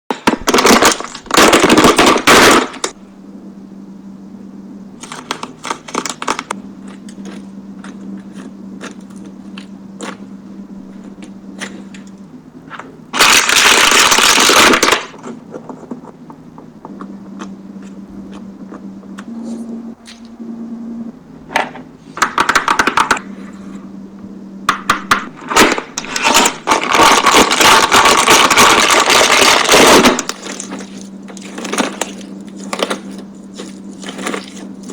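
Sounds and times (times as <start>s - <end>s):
plastic toys crackling and crunching: 0.1s - 3.0s, 5.0s - 9.2s, 13.1s - 16.2s, 25.4s - 34.9s
steady low hum: 0.1s - 34.9s.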